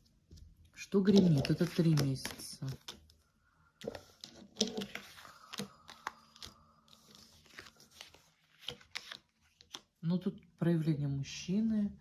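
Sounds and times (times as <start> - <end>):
cards tapping and rustling: 0.2 - 3.2, 3.8 - 10.0.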